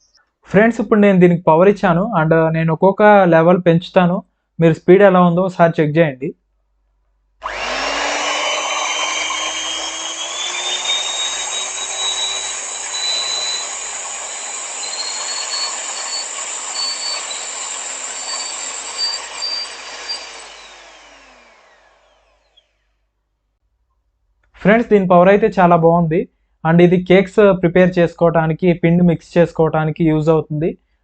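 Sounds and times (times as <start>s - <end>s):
hand mixer motor whine: 7.4s - 22.8s.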